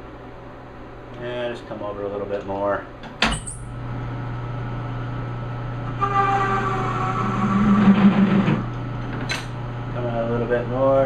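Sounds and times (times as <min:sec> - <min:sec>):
metal lathe humming: 0:05.8 - 0:10.0.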